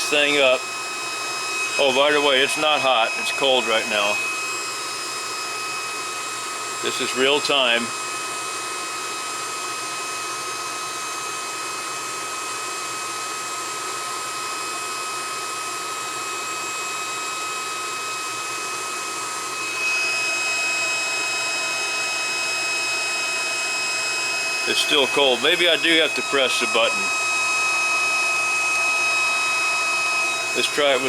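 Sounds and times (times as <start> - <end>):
high steady whine: 0.0 - 8.0, 19.5 - 31.0
cooling fan running: 0.0 - 11.0, 19.2 - 31.0.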